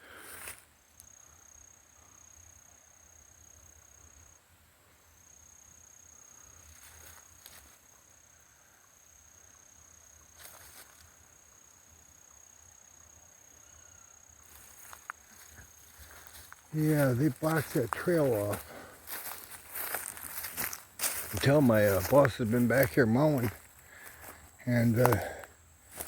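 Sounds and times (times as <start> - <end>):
insect trilling: 13.0 - 26.0
faint rustles: 14.5 - 26.0.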